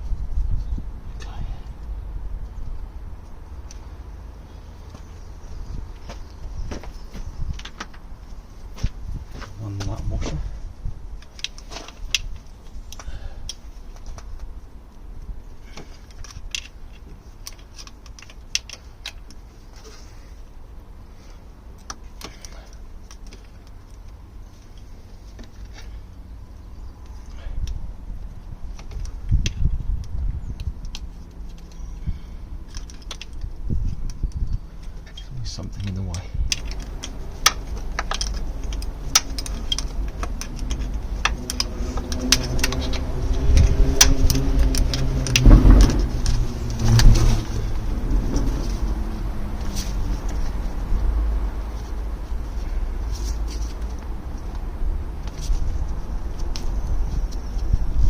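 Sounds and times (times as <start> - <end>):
low background rumble: 0.0 - 58.0
metallic clicks of hand tools: 36.5 - 46.4
passing vehicle engine: 36.6 - 58.0.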